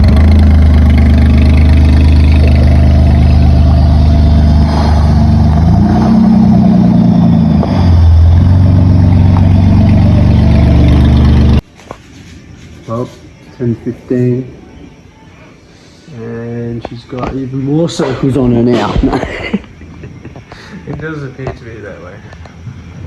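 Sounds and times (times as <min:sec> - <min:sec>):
car engine idling and revving: 0:00.0 - 0:11.6.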